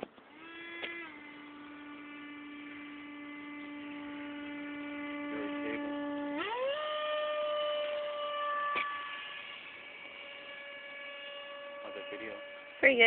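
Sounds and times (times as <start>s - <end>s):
electric ducted fan whining: 0.0s - 13.0s.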